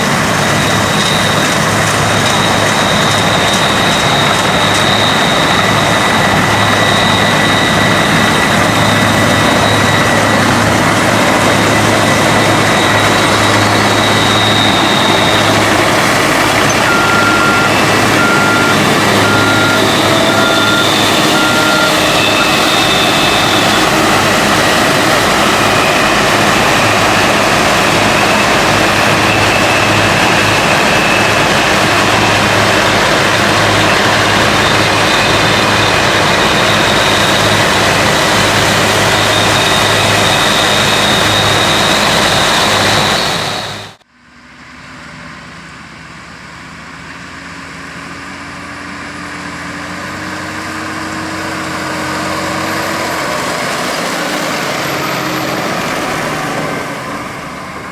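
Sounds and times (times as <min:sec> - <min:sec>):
heavy farm machinery running: 0:00.0 - 0:57.9
quieter engine: 0:00.0 - 0:57.9.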